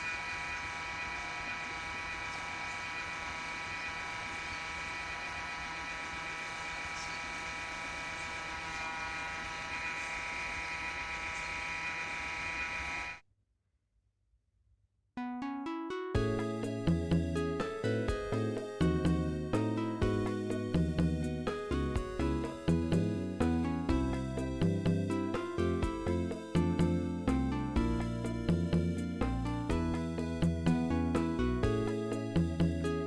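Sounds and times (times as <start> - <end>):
cooling fan whining: 0.0 - 13.2.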